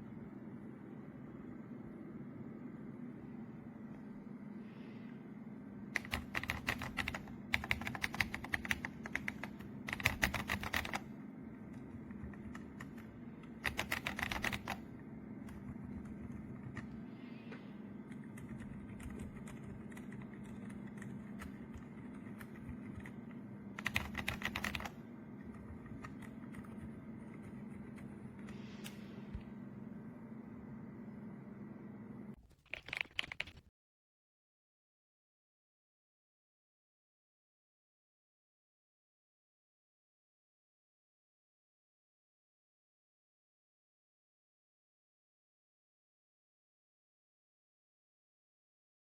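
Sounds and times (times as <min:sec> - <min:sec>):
steady low hum: 0:00.0 - 0:33.5
mechanical keyboard typing: 0:06.0 - 0:11.1, 0:11.7 - 0:17.0, 0:18.1 - 0:28.2, 0:32.4 - 0:33.7.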